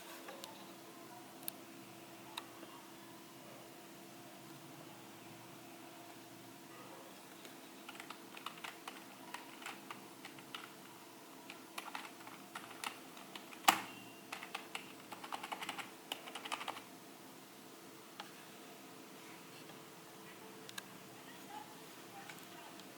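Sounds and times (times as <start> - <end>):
keyboard typing: 7.3 - 10.9, 11.5 - 16.9.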